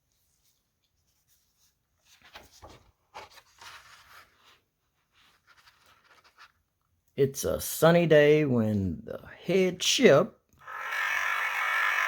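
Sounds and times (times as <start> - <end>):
paper rustling: 0.0 - 7.0.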